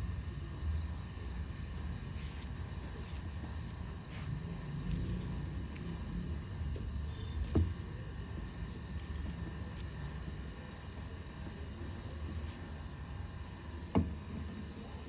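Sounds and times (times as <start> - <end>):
metal chain links clinking: 2.0 - 13.1.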